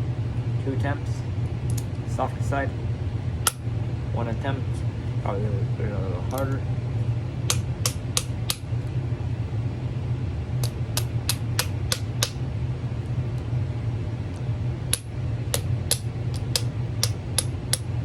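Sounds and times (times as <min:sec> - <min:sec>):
low hum: 0:00.0 - 0:18.0
hammer tapping metal padlock: 0:10.6 - 0:12.4, 0:14.9 - 0:17.9.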